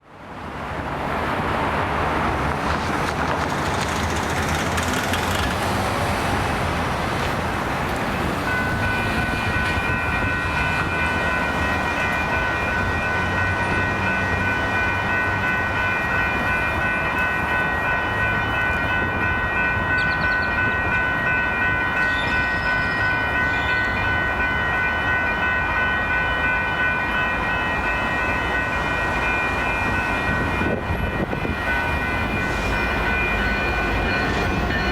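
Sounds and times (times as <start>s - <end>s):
crossing warning bell ringing: 7.6s - 34.9s.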